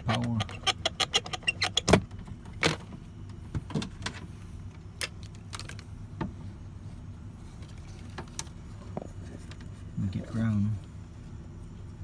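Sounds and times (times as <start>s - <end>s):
tools clicking and knocking: 0.0s - 2.0s
steady low hum: 0.0s - 12.0s.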